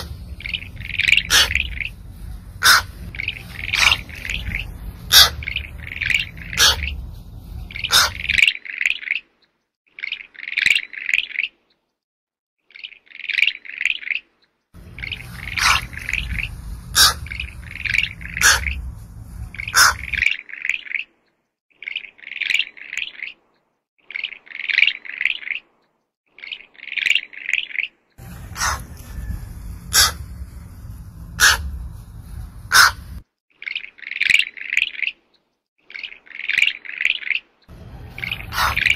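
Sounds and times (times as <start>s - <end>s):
low rumble with hiss: 0.0s - 8.4s, 14.8s - 20.2s, 28.2s - 33.2s, 37.7s - 38.9s
rapid high-pitched chirps: 0.0s - 8.4s, 14.8s - 20.2s.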